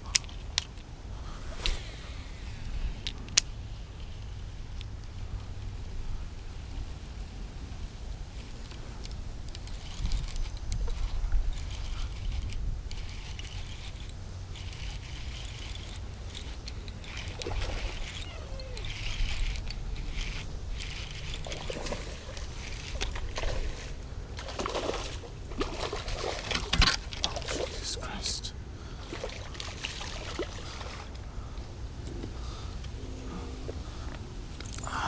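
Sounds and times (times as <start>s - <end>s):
fishing tackle clicks and rattles: 0.0s - 0.9s, 2.9s - 28.4s, 34.5s - 35.0s
wind rumbling on microphone: 0.0s - 27.7s.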